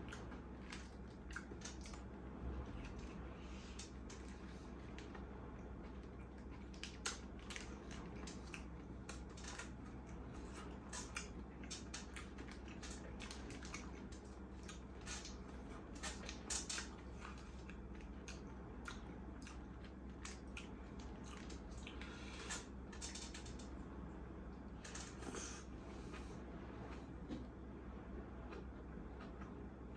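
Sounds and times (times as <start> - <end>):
chewing and biting food: 0.0 - 2.1, 3.8 - 22.7
steady low hum: 0.0 - 29.9.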